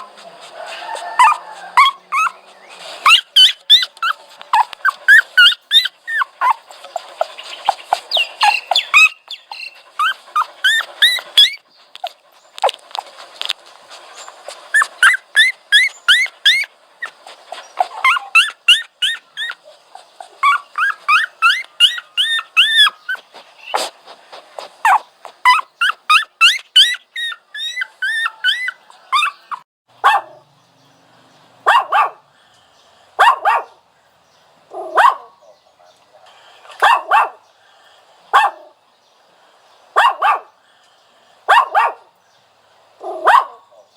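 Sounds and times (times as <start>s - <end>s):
dog whining: 0.7s - 2.4s, 3.0s - 11.6s, 14.7s - 17.2s, 17.8s - 23.8s, 24.8s - 29.6s
dog barking: 0.8s - 2.4s, 24.8s - 30.4s, 31.6s - 32.2s, 33.2s - 33.8s, 34.7s - 36.0s, 36.7s - 37.4s, 38.3s - 38.8s, 40.0s - 40.6s, 41.5s - 42.1s, 43.0s - 43.9s.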